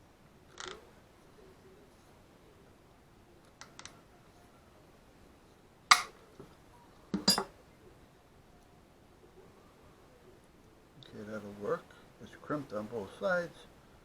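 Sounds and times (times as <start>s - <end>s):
loud crimping tool snap: 5.9s - 6.2s
small metal parts clinking: 7.2s - 7.5s.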